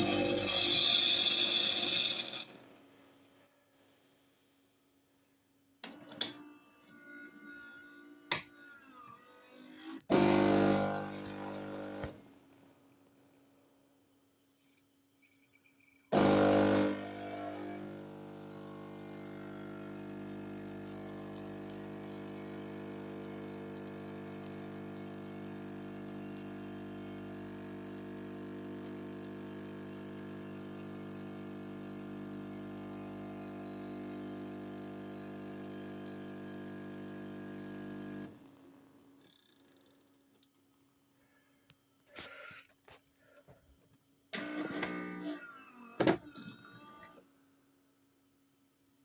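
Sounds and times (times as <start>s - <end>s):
coffee machine pump running: 0.0s - 2.7s, 10.1s - 12.5s, 16.1s - 38.6s, 44.4s - 46.8s.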